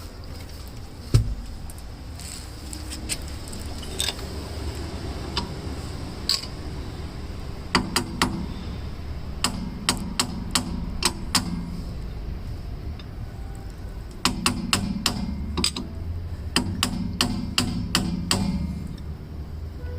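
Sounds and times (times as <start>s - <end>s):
steady low hum: 0.0s - 19.8s
metal clicks and taps: 14.1s - 15.9s.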